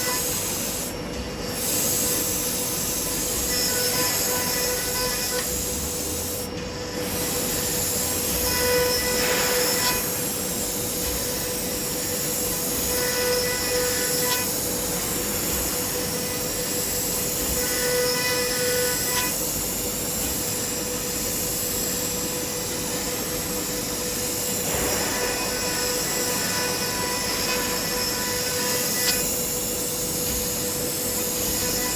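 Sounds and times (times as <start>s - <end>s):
hiss of cutting: 0.0s - 31.9s
router spindle whine: 8.0s - 10.2s, 24.6s - 31.9s.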